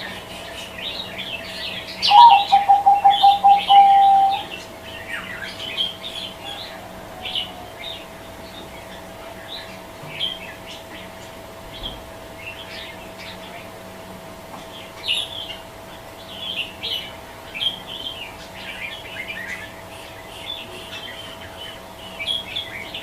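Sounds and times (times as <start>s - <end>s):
small birds chirping: 0.0s - 13.8s, 14.6s - 23.0s
dove cooing: 1.7s - 4.7s.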